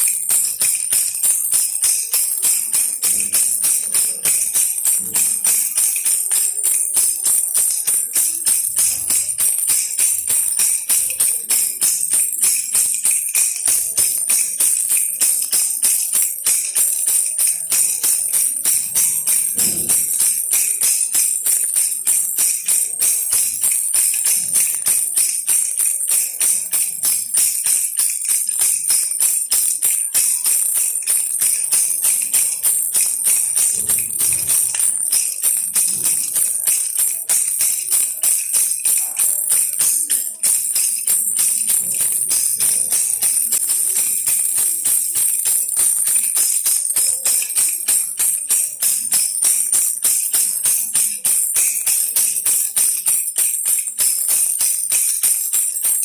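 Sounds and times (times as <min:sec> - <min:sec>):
baby rattle jingling: 0:00.0 - 0:56.0.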